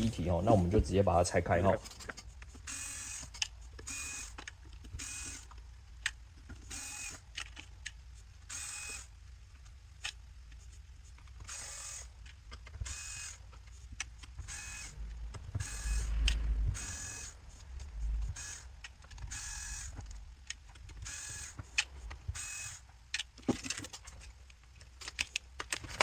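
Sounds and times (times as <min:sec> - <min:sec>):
electric screwdriver whirring: 0:02.6 - 0:05.5, 0:06.6 - 0:07.4, 0:08.5 - 0:09.1, 0:11.4 - 0:12.2, 0:12.8 - 0:13.4, 0:14.4 - 0:17.4, 0:18.3 - 0:20.1, 0:20.9 - 0:22.9.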